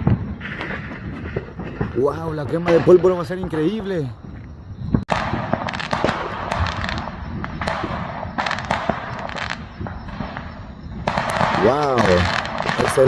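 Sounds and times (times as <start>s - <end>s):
fireworks popping and banging: 0.0s - 13.0s.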